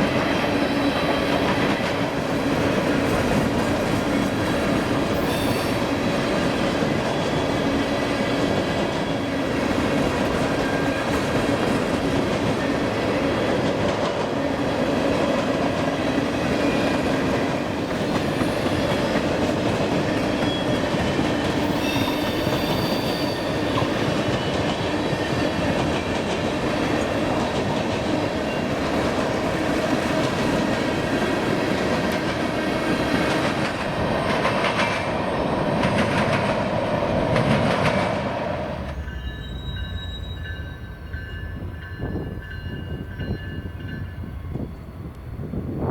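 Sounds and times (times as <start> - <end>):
train wheels clattering on track: 0.0 - 45.7
faint wheel squeal: 5.2 - 5.9, 21.6 - 23.9, 39.1 - 40.8.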